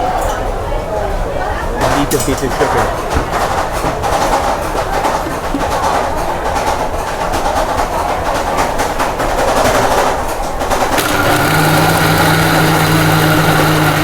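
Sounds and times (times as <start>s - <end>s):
steady motor hum: 10.9s - 14.0s.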